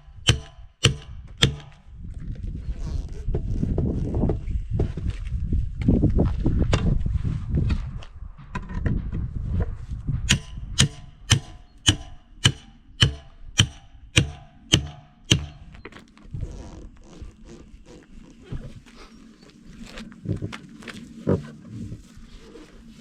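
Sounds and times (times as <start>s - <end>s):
hammer striking steel wheel rim: 0.0s - 1.8s, 10.3s - 15.8s.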